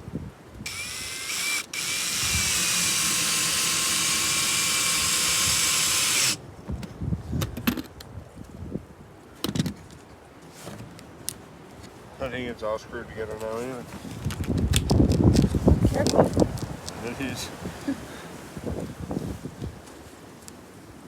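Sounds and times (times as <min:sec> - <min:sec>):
power drill driving screws: 0:00.7 - 0:06.4.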